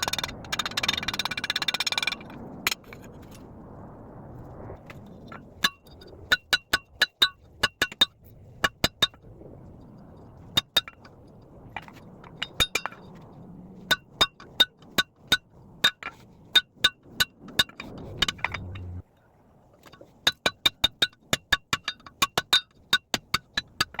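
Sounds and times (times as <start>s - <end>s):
low background hum: 18.0s - 19.0s.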